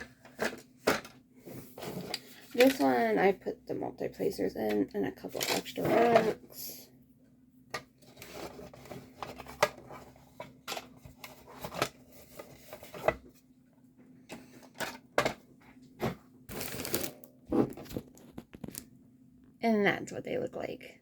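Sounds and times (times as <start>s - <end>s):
plastic pens clicking and tapping: 2.1s - 3.0s.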